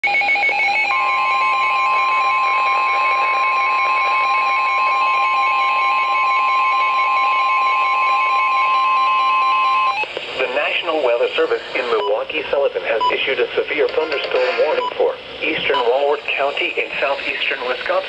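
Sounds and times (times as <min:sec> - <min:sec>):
rapidly alternating beeps: 0:12.9 - 0:13.3, 0:14.0 - 0:15.0.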